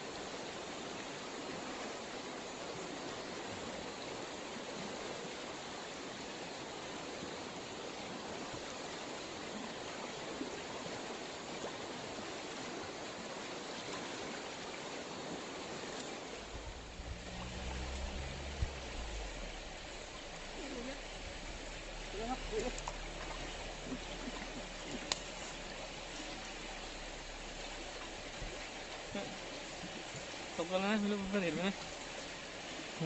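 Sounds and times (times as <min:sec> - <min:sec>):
stream rushing over rocks: 0:00.0 - 0:33.0
low rumble: 0:16.4 - 0:32.6.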